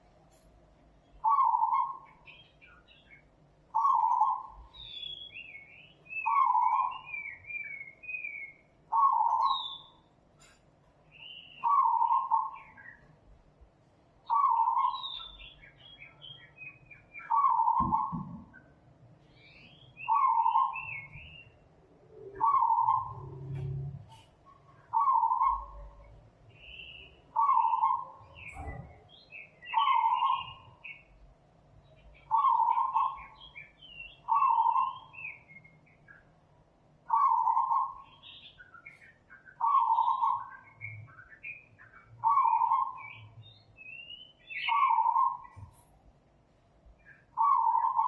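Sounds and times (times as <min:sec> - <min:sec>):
bird chirping and warbling: 0:01.0 - 0:13.3, 0:14.2 - 0:31.2, 0:31.8 - 0:46.0, 0:47.0 - 0:48.0
bird repeating mid-pitched call: 0:44.5 - 0:45.6, 0:47.4 - 0:48.0.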